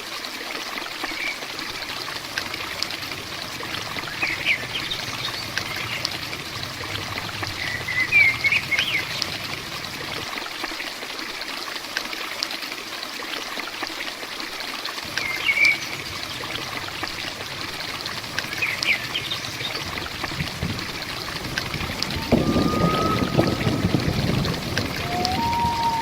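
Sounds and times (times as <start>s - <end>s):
water running and dripping: 0.0s - 26.0s
heavy rain falling: 0.8s - 10.9s, 15.0s - 26.0s
bird chirps: 21.8s - 26.0s.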